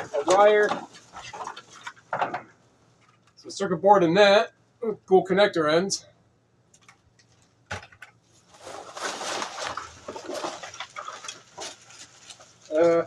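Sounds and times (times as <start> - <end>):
rummaging through electronics scrap: 0.0 - 2.4, 8.3 - 13.0.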